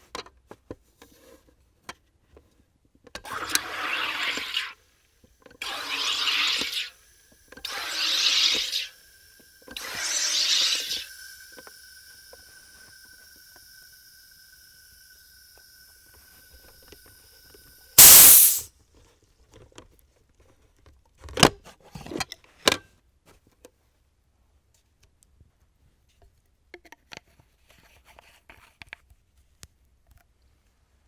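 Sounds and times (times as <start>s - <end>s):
loud hiss of gas release: 5.6s - 18.7s.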